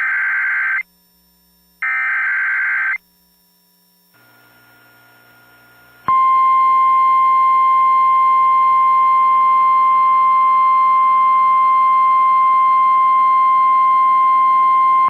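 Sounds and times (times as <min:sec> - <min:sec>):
loud continuous warning beep: 0:06.1 - 0:15.0.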